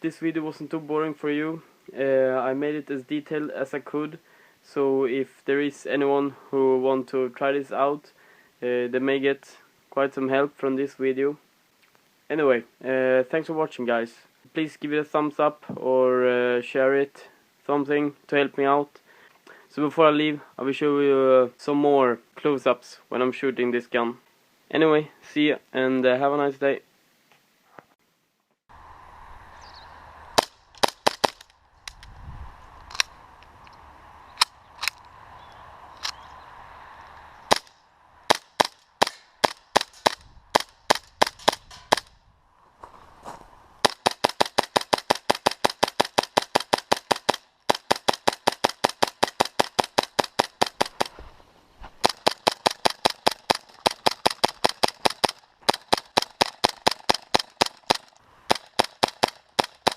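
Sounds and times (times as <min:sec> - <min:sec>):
airsoft pistol firing: 0:30.4 - 0:31.5, 0:37.5 - 0:37.7, 0:38.3 - 0:42.1, 0:43.8 - 0:51.2, 0:52.0 - 0:59.9.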